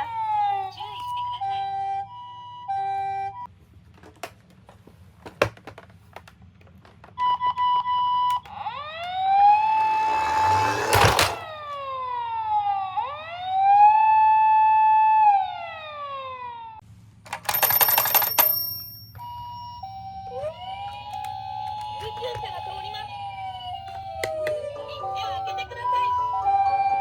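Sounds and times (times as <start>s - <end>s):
electronic siren wailing: 8.6s - 11.4s.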